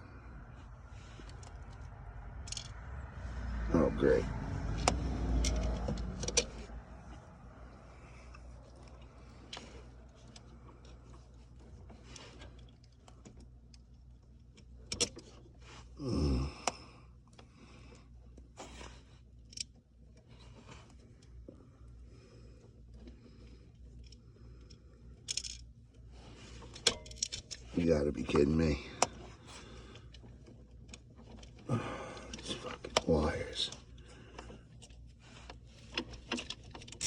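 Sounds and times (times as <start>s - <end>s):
person grunting: 16.0s - 16.8s.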